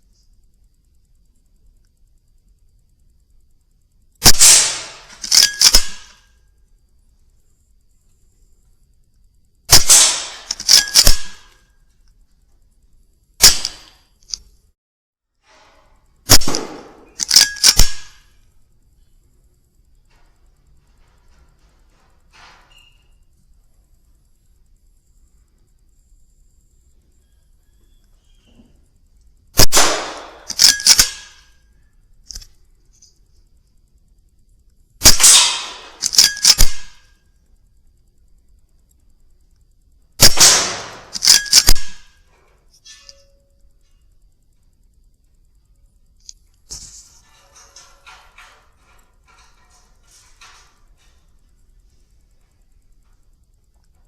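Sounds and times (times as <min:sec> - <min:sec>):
air rifle shots: 0:04.2 - 0:06.2, 0:09.7 - 0:11.5, 0:13.4 - 0:14.0, 0:16.3 - 0:18.3, 0:29.6 - 0:31.5, 0:35.0 - 0:37.0, 0:40.2 - 0:42.1
metallic clicks: 0:04.2 - 0:06.3, 0:09.7 - 0:12.2, 0:13.4 - 0:14.6, 0:16.2 - 0:18.4, 0:29.1 - 0:31.6, 0:32.2 - 0:33.2, 0:34.6 - 0:37.1, 0:40.2 - 0:44.2.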